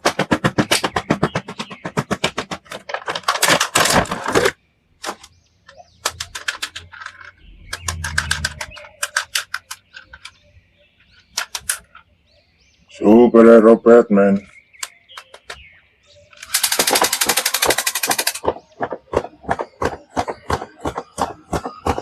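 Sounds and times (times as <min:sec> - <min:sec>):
rapid sharp clicks: 0:00.0 - 0:10.4, 0:11.3 - 0:12.0, 0:16.3 - 0:22.0.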